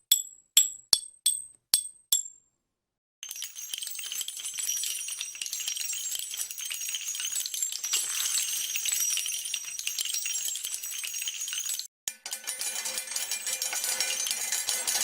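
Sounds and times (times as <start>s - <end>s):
small metal pieces jingling: 3.2s - 15.0s.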